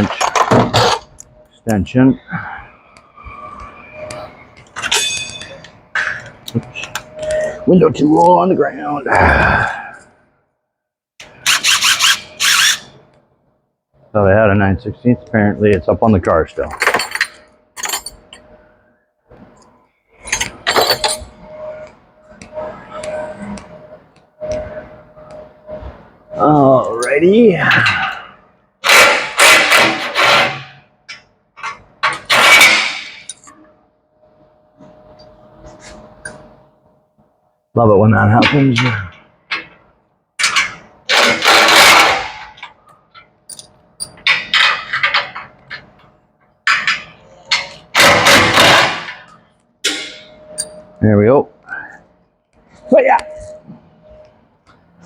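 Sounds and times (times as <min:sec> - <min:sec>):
power wrench bursts: 0:11.3 - 0:12.8
metal hand tools clinking: 0:43.5 - 0:44.2.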